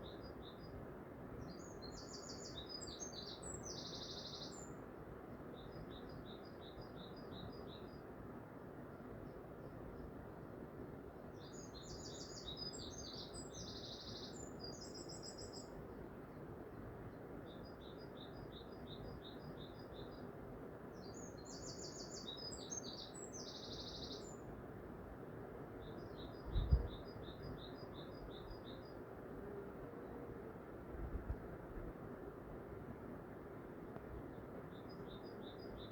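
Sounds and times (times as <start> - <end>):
low background noise: 0.0 - 35.9
songbird chirping and trilling: 1.4 - 4.8, 11.4 - 15.8, 21.0 - 24.5, 25.8 - 29.0, 34.3 - 35.9.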